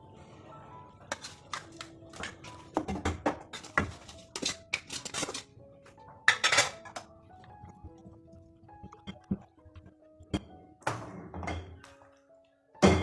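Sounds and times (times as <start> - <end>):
soft background music: 0.0 - 13.0
utensils and dishes clattering: 1.0 - 5.6, 6.2 - 7.2, 10.3 - 12.0.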